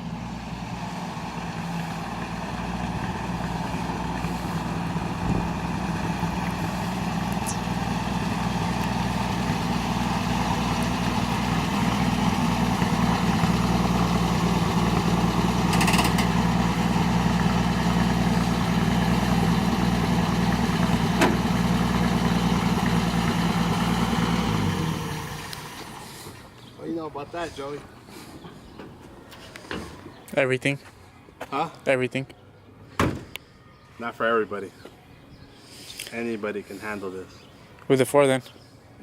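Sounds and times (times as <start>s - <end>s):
vehicle engine idling: 0.0s - 30.2s.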